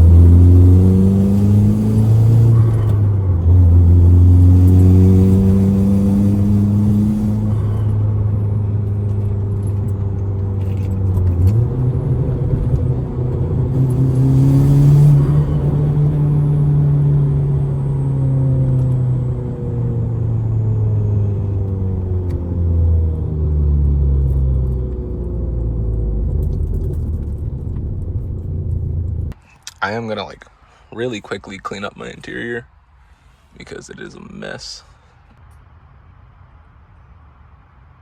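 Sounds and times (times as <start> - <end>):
car engine running while driving: 0.0 - 29.4.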